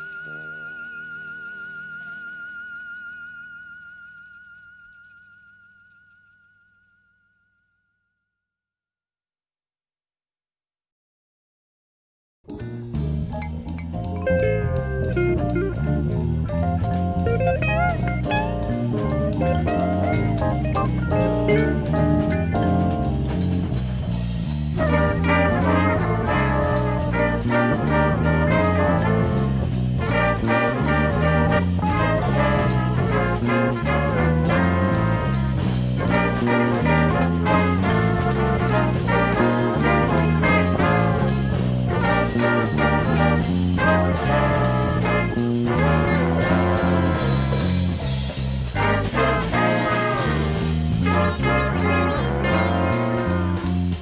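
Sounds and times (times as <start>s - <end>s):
rhythmic bass line: 12.5s - 54.0s
brass section playing jazz: 13.3s - 54.0s.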